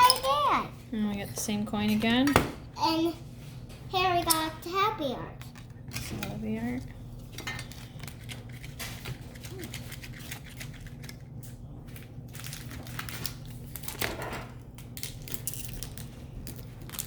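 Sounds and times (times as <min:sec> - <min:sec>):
plastic packaging clicks and crinkles: 0:07.4 - 0:17.0.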